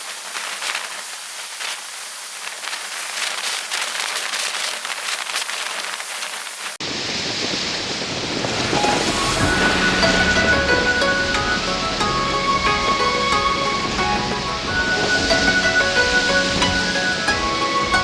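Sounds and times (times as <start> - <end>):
water spray hissing: 0.0 - 18.0
surf and wind rumble: 6.8 - 18.0
droplets ticking: 8.4 - 18.0.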